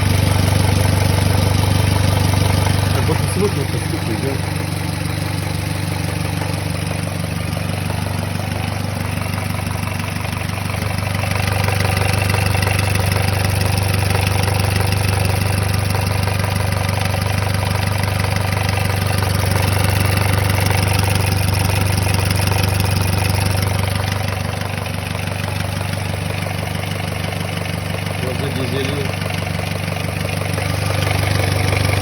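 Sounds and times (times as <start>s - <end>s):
car engine idling: 0.0s - 32.0s
engine knocking: 0.0s - 32.0s.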